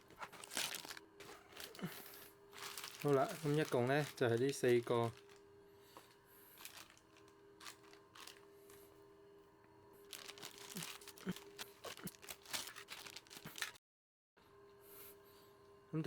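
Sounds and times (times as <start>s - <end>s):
plastic packaging rustling: 0.0s - 5.4s, 6.5s - 8.5s, 10.0s - 13.8s
faint steady hum: 0.0s - 13.8s.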